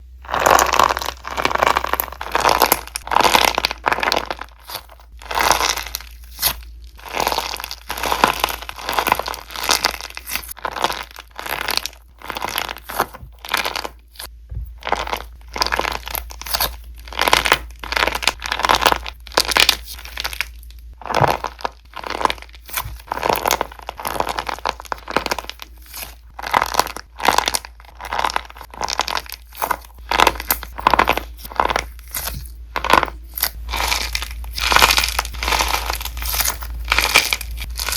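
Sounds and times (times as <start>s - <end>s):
crunchy slime squeezed by hand: 0.2s - 37.9s.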